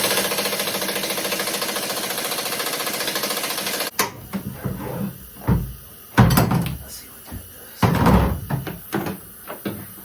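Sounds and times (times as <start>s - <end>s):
air impact gun hammering: 0.0s - 4.1s.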